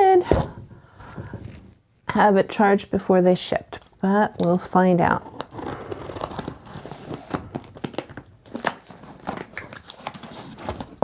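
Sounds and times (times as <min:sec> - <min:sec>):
packaging crinkling and tearing: 0:03.7 - 0:11.0.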